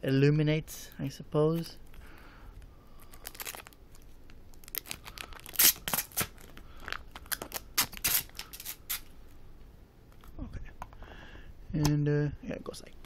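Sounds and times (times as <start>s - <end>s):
plastic packaging crinkling: 2.6s - 9.1s.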